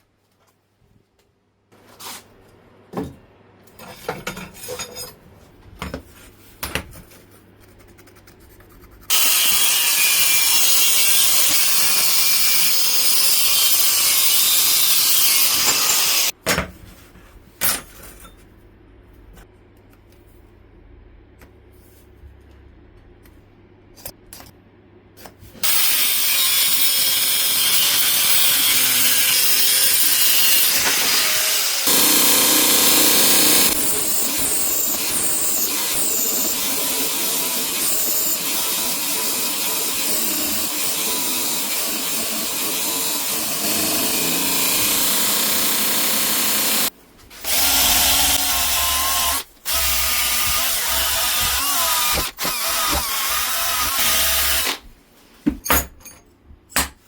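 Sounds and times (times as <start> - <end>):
electric power tool running: 13.2 - 16.3, 25.6 - 54.8.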